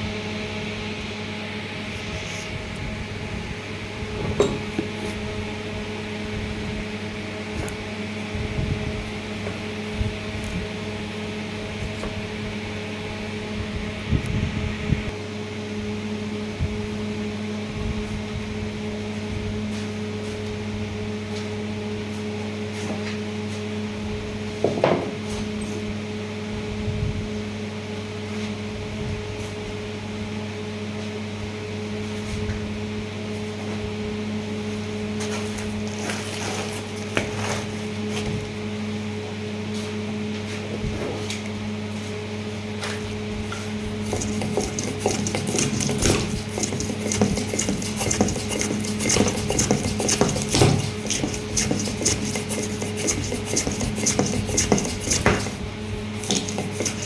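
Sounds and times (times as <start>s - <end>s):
machine hum: 41.7s - 57.0s.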